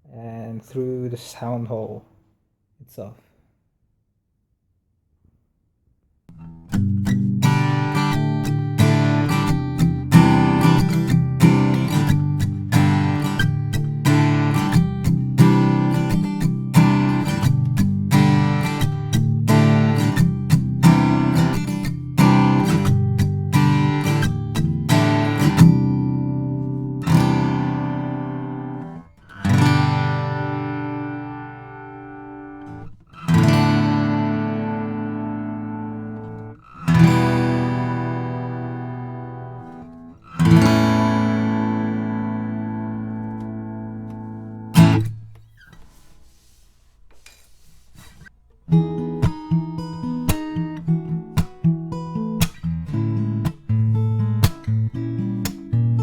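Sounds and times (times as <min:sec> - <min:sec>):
acoustic guitar strumming: 0:06.3 - 0:46.6, 0:47.7 - 0:56.0
guitar chords ringing out: 0:06.4 - 0:45.2.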